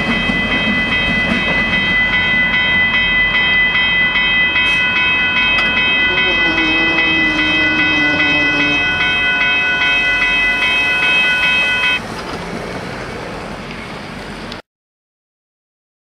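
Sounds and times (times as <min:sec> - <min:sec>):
level-crossing warning bell: 0:00.0 - 0:12.1
train rumble: 0:00.0 - 0:14.6.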